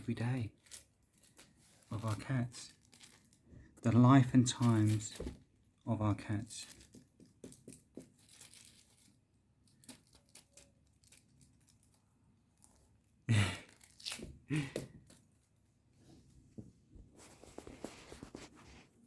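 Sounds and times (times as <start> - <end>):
cats scratching and rustling: 0.0 - 19.0
crinkling: 0.0 - 19.0.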